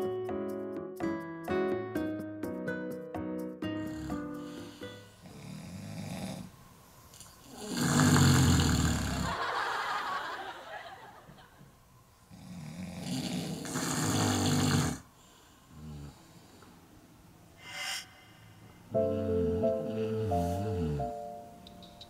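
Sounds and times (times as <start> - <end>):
man snoring heavily: 3.8 - 9.4, 12.3 - 15.1, 15.7 - 16.5, 19.0 - 21.2.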